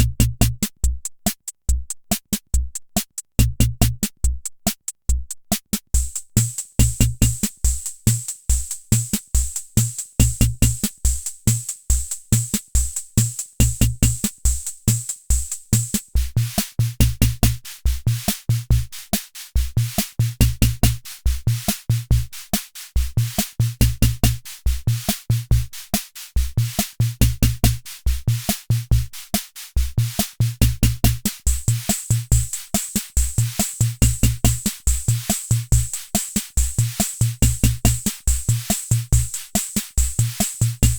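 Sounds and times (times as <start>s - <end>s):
electronic drum machine beat: 6.0s - 16.5s, 29.9s - 40.9s.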